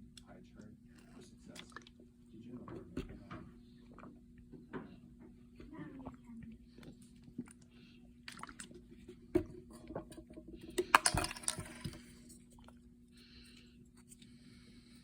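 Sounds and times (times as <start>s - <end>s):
steady low hum: 0.0s - 15.0s
rustling and clattering: 9.0s - 12.6s.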